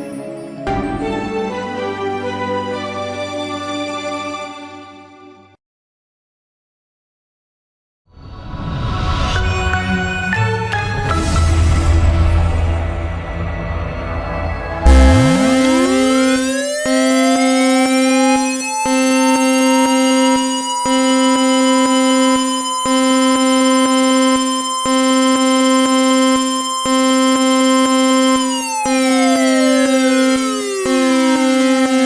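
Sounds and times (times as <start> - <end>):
synthesized siren tone: 14.9 - 32.0.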